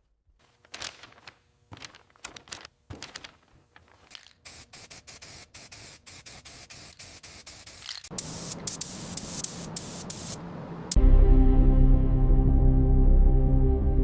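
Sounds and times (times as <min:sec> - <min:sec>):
spray gun hissing in bursts: 0:04.4 - 0:10.4.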